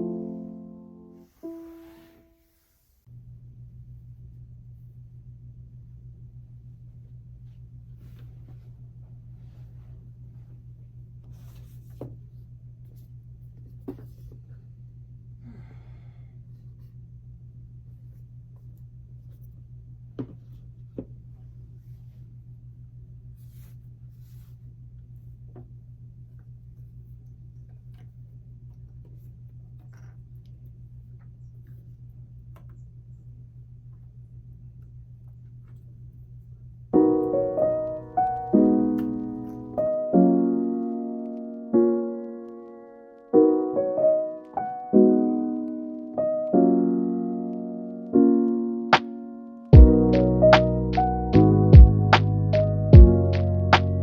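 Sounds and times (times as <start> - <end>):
soft piano music: 0.0 - 2.7, 36.9 - 54.0
steady low hum: 3.0 - 40.5.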